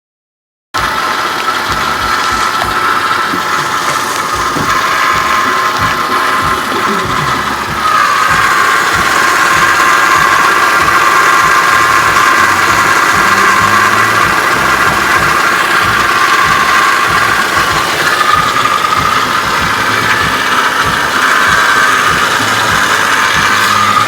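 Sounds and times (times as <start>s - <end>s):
car engine idling: 0.8s - 24.0s
loud engine whine: 0.8s - 24.0s.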